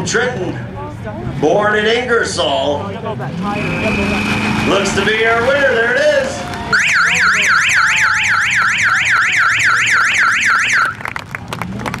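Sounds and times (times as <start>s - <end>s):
electronic yelp siren wailing: 6.7s - 11.0s.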